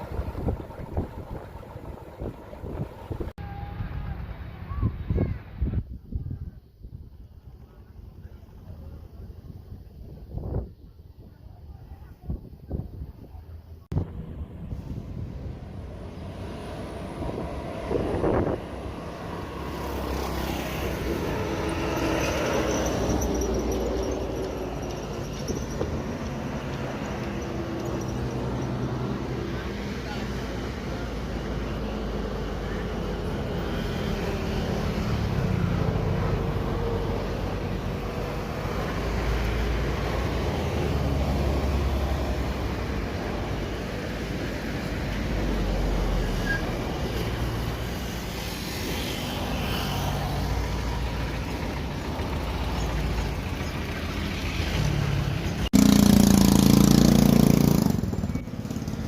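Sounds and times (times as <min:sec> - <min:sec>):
wind buffeting microphone: 0:00.0 - 0:21.9.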